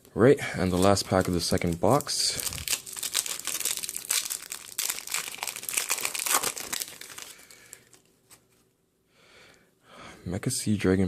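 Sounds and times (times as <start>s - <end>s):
foil wrapper crinkling: 0.6s - 8.5s.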